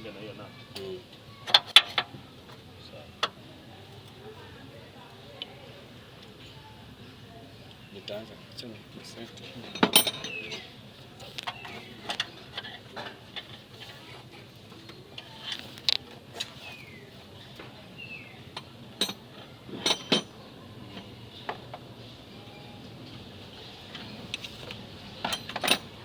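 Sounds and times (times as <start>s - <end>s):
metal clinks of hand tools: 9.6s - 10.6s, 19.0s - 20.3s, 25.2s - 25.9s.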